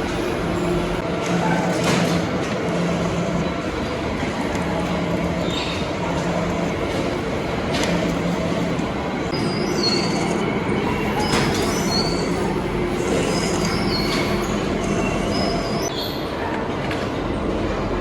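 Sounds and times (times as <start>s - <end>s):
metal lathe machining: 0.0s - 15.9s
high-pitched tool squeals: 9.4s - 16.1s.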